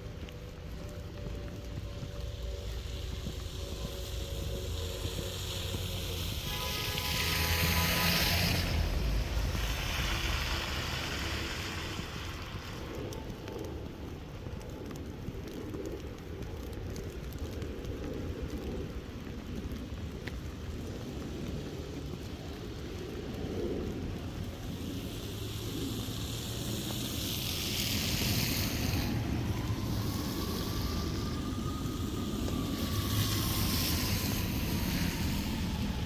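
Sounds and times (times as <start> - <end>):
vehicle approaching hiss: 0.0 - 13.1, 23.9 - 36.0
wind rumbling on microphone: 0.0 - 36.0.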